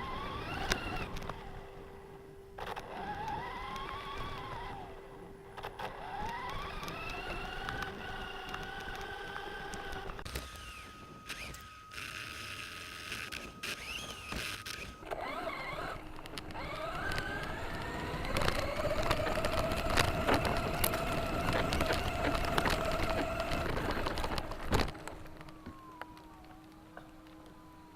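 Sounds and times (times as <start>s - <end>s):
motor whine: 0.0s - 27.9s
clicks and rattles: 13.2s - 27.6s.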